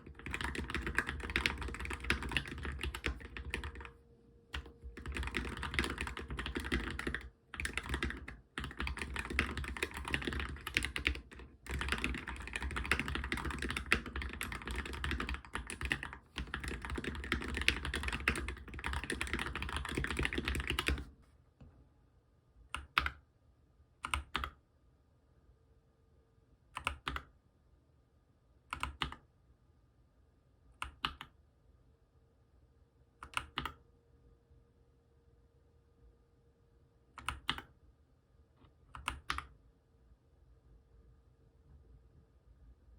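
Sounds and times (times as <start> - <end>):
mechanical keyboard typing: 0.0 - 21.1, 22.8 - 23.2, 24.0 - 24.6, 26.8 - 27.3, 28.7 - 29.2, 30.8 - 31.3, 33.2 - 33.8, 37.2 - 37.7, 38.9 - 39.5.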